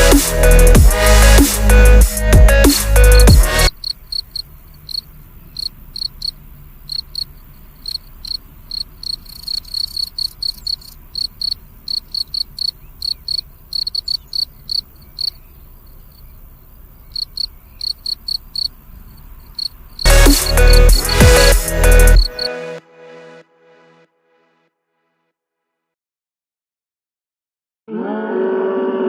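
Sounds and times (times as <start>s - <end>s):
cricket chirping: 3.7s - 22.5s.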